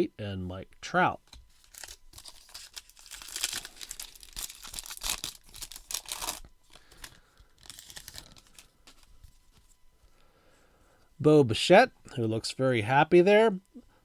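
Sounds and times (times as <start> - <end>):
rustling of wrapper and cards: 1.2 - 9.9
card pack wrapper tearing: 1.3 - 9.2.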